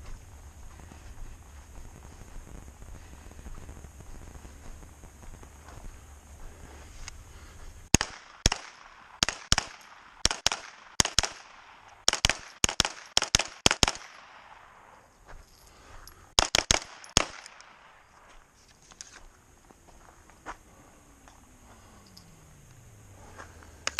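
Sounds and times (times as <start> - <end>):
pistol gunshots: 7.9 - 14.9, 16.4 - 18.0.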